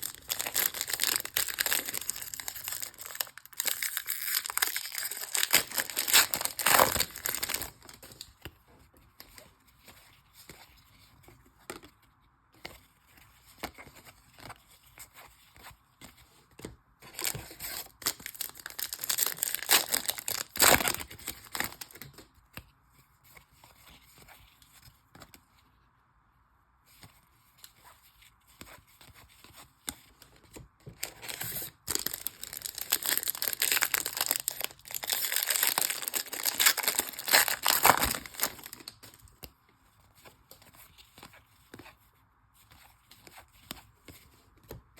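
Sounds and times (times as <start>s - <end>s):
card pack wrappers tearing: 0.0s - 7.9s, 17.2s - 21.9s, 31.0s - 39.1s.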